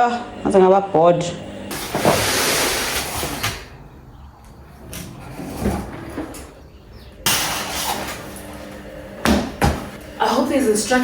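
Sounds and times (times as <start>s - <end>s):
loud scraping slide: 1.7s - 3.6s.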